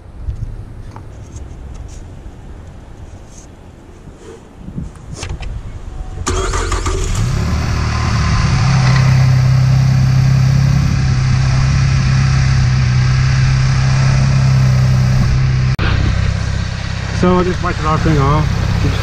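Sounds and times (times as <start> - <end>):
car engine starting and idling: 6.0 - 19.0.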